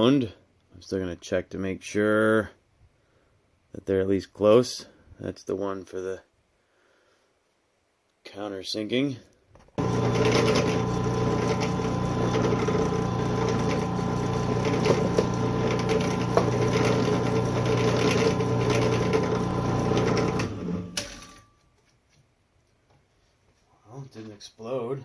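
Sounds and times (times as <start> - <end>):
drill press motor running: 9.8 - 21.3.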